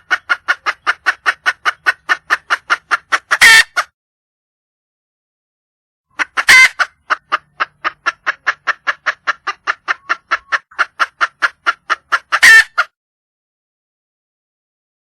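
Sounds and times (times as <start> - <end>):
hen clucking: 0.0 - 3.9, 6.1 - 13.0
hen squawking harshly: 3.3 - 3.8, 6.2 - 6.9, 12.3 - 12.9.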